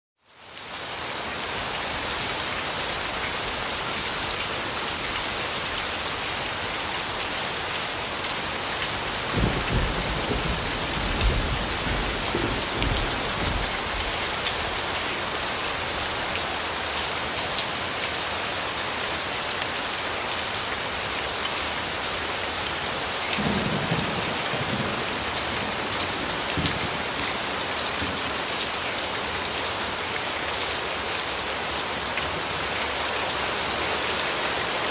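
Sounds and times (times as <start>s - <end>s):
steady rain falling: 0.2s - 34.9s
thunder rumbles: 9.1s - 14.3s, 23.4s - 28.4s.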